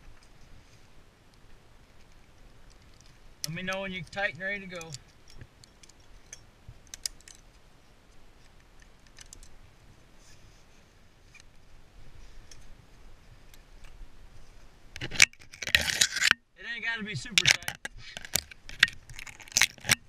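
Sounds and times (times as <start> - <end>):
climbing hardware clicking and rattling: 17.2 - 20.0.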